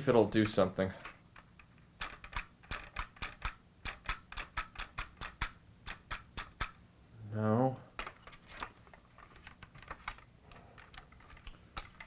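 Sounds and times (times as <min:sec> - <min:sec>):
toy car plastic clicks: 0:02.0 - 0:06.7.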